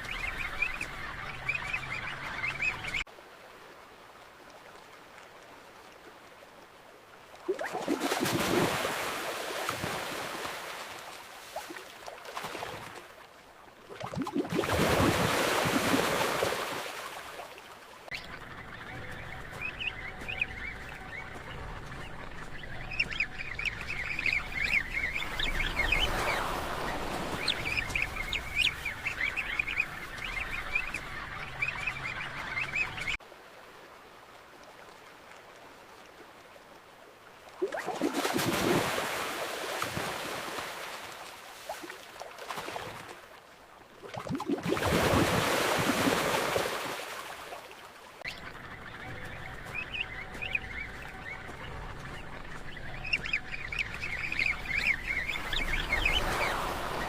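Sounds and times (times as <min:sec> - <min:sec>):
ocean noise: 0:00.0 - 0:34.7, 0:37.6 - 0:57.0
loud rush of water: 0:25.1 - 0:28.4, 0:54.0 - 0:57.0.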